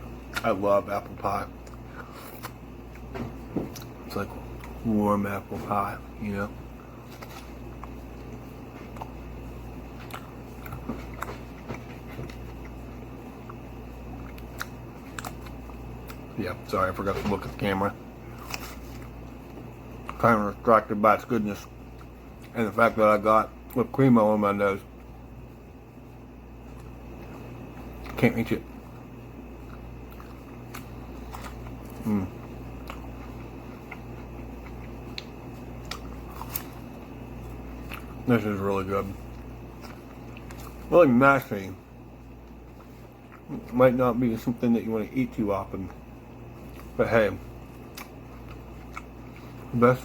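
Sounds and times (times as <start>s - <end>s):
steady low hum: 0.0s - 50.0s
person chewing food: 1.5s - 4.8s, 6.6s - 16.3s, 18.2s - 20.2s, 26.4s - 38.3s, 39.0s - 43.8s, 45.8s - 50.0s.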